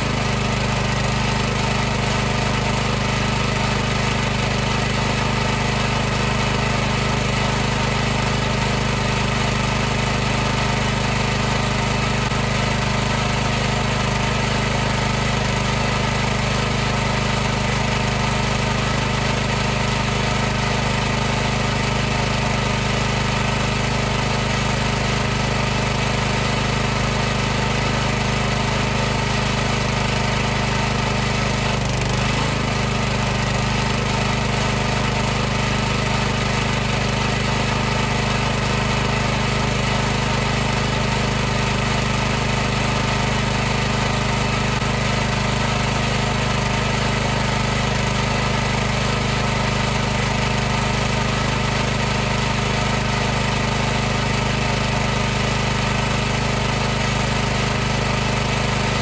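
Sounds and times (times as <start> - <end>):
pressure washer hum and hiss: 0.0 - 59.0.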